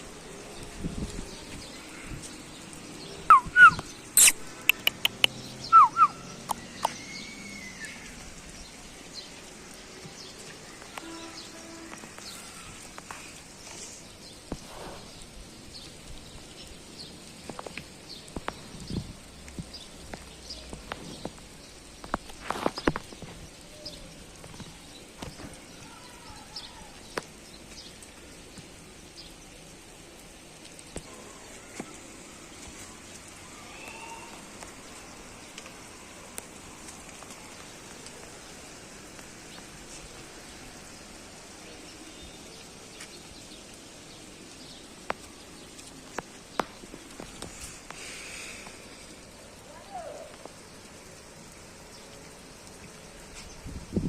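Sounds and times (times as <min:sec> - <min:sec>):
rain pattering on rooftop: 0:00.0 - 0:54.0
faint short chirps: 0:03.6 - 0:04.8.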